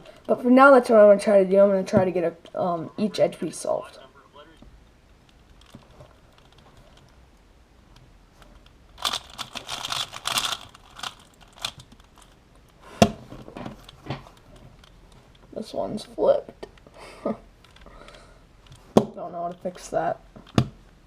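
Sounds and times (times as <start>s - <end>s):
puzzle cube turning clacks: 8.6s - 15.0s.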